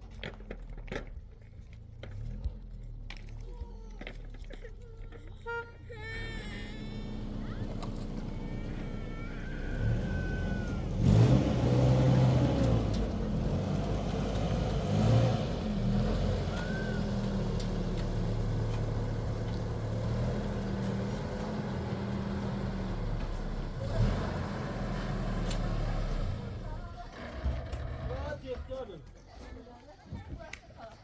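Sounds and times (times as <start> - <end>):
engine revving: 6.2 - 28.3.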